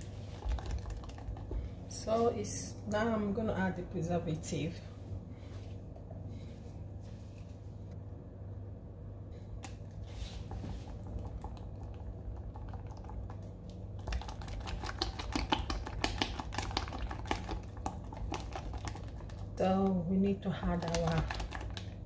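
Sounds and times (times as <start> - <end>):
low steady hum: 0.0 - 22.0.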